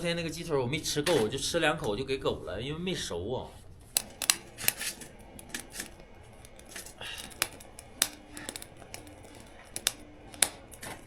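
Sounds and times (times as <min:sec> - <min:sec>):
snipping clicks of food cutting: 0:03.9 - 0:11.0.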